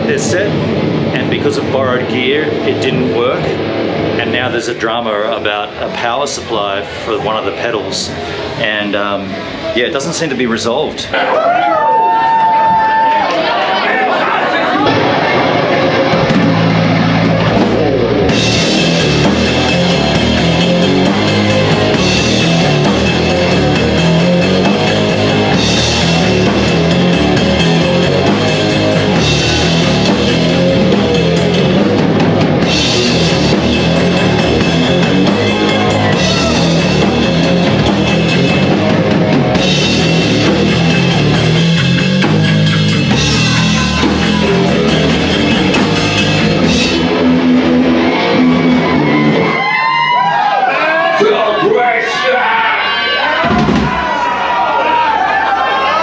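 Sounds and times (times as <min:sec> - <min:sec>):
distorted electric guitar: 0:00.0 - 0:10.5, 0:14.6 - 0:51.6
drum kit: 0:14.8 - 0:50.5, 0:53.4 - 0:54.2.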